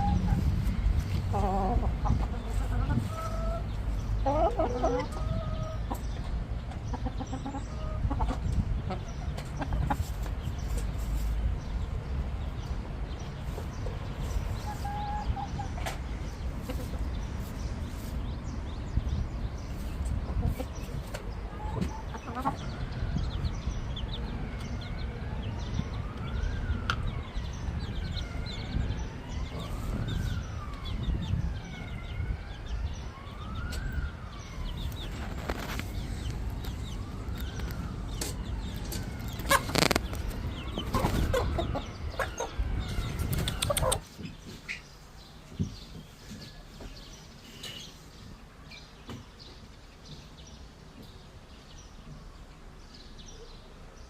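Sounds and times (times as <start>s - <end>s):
chickens calling: 0.0s - 50.4s
siren wailing: 24.0s - 40.8s.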